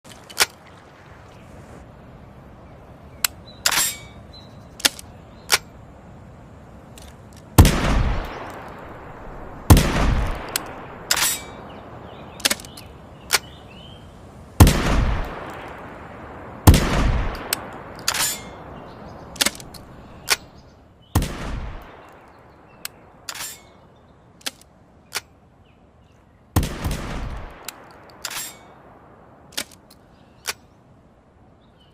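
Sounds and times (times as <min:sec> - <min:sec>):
metallic clicks of gun action: 0:04.8 - 0:05.7, 0:12.4 - 0:13.5, 0:17.3 - 0:18.6, 0:19.4 - 0:20.5, 0:21.7 - 0:23.8, 0:24.4 - 0:25.3, 0:27.2 - 0:28.7, 0:29.5 - 0:30.7
shotgun shots with echo: 0:07.6 - 0:08.7, 0:09.6 - 0:11.6, 0:14.6 - 0:15.7, 0:16.7 - 0:18.6, 0:21.2 - 0:22.0.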